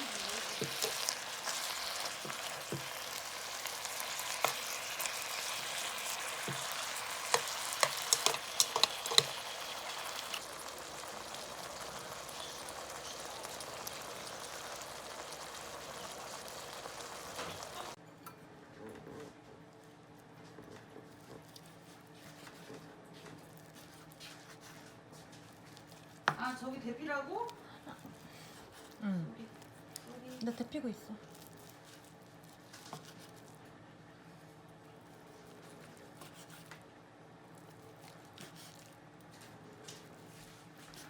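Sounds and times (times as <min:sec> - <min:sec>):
food sizzling in a pan: 0:00.0 - 0:18.0.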